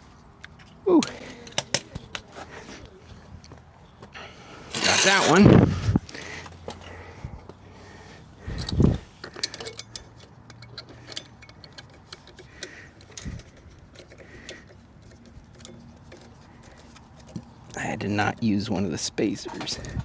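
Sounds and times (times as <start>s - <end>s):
metal tools clicking and clinking: 0.4s - 2.4s, 4.7s - 5.5s, 8.5s - 17.5s.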